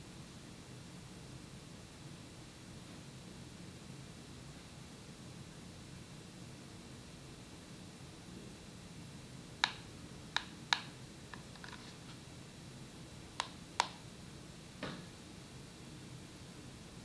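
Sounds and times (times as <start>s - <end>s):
sharp clicks: 9.6s - 9.8s, 13.4s - 14.0s.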